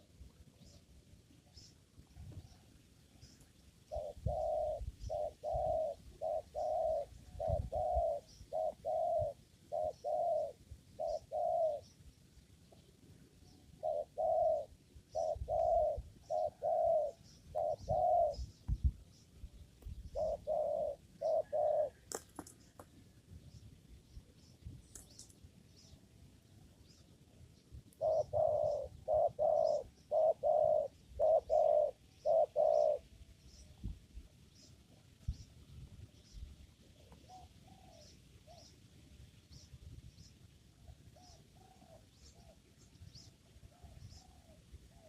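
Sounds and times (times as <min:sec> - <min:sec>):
small birds chirping: 0:00.0 - 0:45.0
dove cooing: 0:03.8 - 0:12.0, 0:13.4 - 0:18.6, 0:20.0 - 0:22.8, 0:28.0 - 0:33.2, 0:37.0 - 0:38.8, 0:40.8 - 0:45.0.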